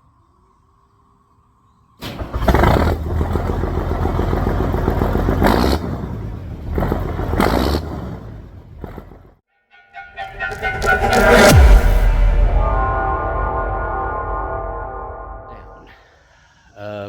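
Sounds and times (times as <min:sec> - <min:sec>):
large vehicle engine running: 0:02.1 - 0:09.4.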